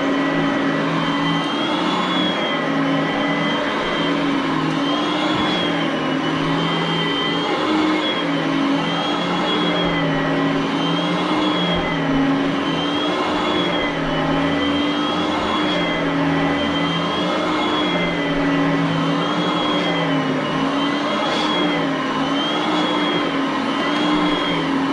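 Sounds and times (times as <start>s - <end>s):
vacuum cleaner motor whine: 0.0s - 24.9s.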